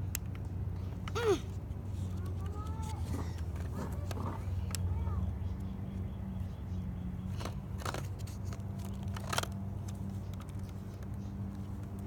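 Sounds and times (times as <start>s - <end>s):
toy blaster clicks and knocks: 7.4s - 10.8s.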